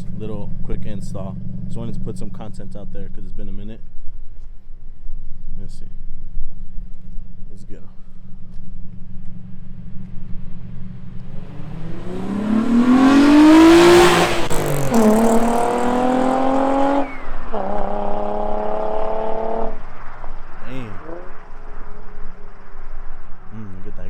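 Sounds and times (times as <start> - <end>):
car engine accelerating hard: 9.0 - 23.8.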